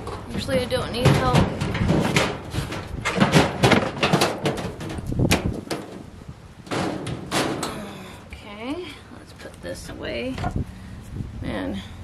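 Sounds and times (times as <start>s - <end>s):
machine knocking and scraping: 0.9s - 6.0s.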